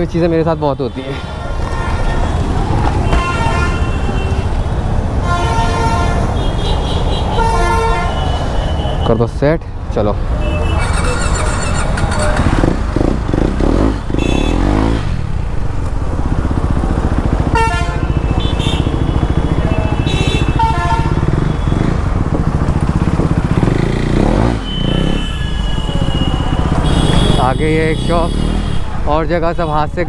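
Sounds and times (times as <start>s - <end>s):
vehicle horns honking: 0.0s - 9.3s, 10.3s - 30.0s
motorcycle engine running: 10.4s - 29.1s.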